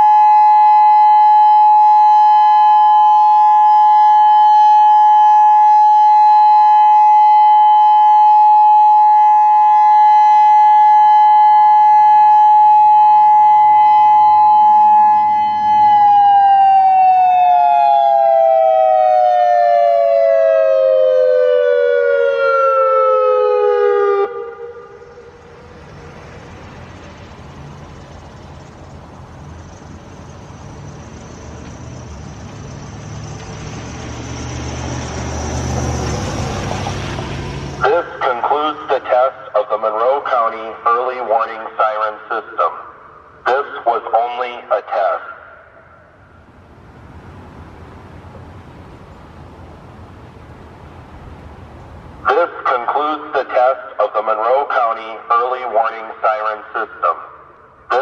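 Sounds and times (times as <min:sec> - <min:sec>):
electronic warning siren: 0:00.0 - 0:46.4
faint outdoor background: 0:00.0 - 0:58.0.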